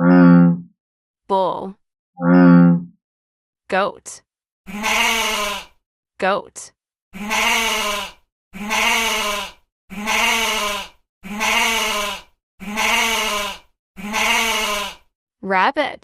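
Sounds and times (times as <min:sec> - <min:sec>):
goat bleating: 0:04.7 - 0:05.8, 0:07.2 - 0:15.1.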